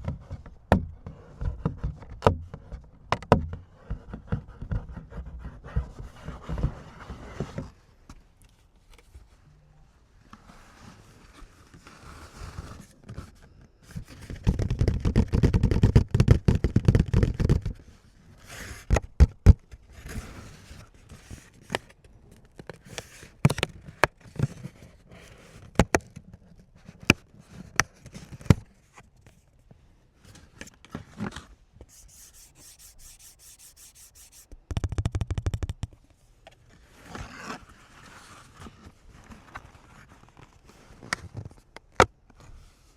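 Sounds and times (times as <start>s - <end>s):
cards being handled: 31.9s - 34.5s.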